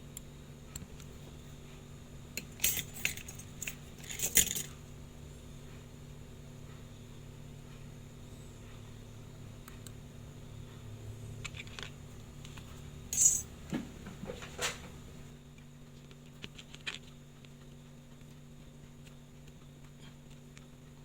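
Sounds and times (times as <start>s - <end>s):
faint steady hum: 0.0s - 21.0s
metal tools clinking on bench: 2.4s - 4.8s, 13.1s - 13.5s.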